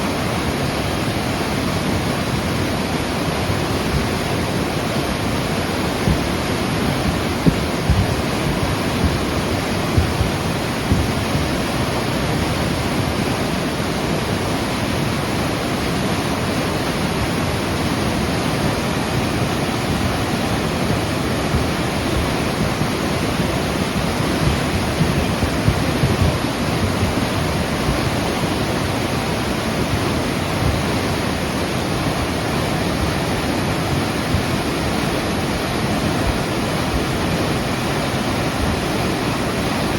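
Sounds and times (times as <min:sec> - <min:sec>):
river water rushing roar: 0:00.0 - 0:39.9
low thumps: 0:07.0 - 0:11.2.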